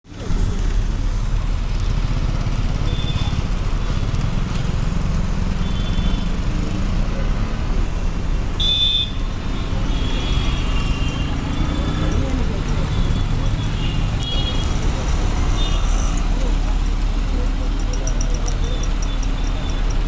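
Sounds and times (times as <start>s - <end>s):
street traffic: 0.0s - 20.0s
bus engine rumble: 0.1s - 20.0s.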